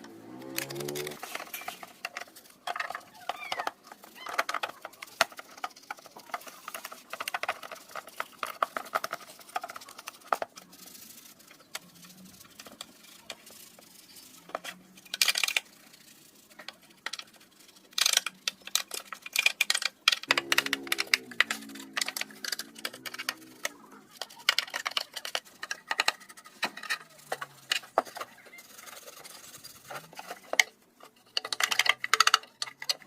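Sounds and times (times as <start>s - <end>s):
small plastic and metal clicks: 16.6s - 28.3s, 30.2s - 33.0s.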